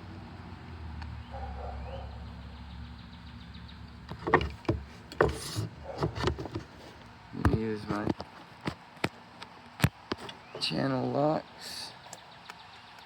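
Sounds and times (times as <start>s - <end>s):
metallic clicks and knocks: 4.1s - 6.7s
metal scrape: 4.1s - 7.0s.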